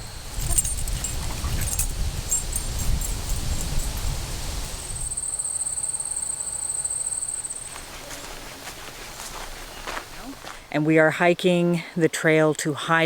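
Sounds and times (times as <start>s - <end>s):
insect trilling buzz: 0.0s - 10.4s.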